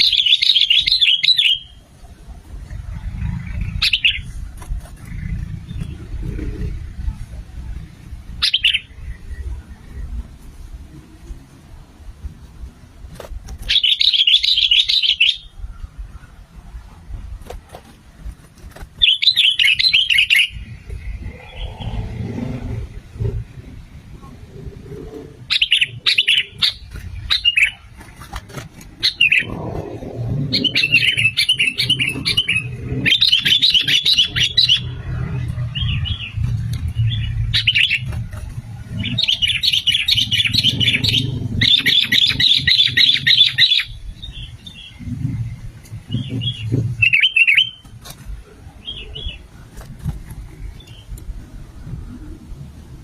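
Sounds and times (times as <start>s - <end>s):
bird chattering calls: 0.0s - 1.8s, 3.0s - 6.8s, 8.4s - 9.0s, 13.6s - 15.8s, 19.0s - 22.1s, 25.5s - 29.8s, 30.5s - 36.4s, 37.0s - 38.3s, 38.9s - 45.4s
low steady rumble: 1.6s - 53.0s.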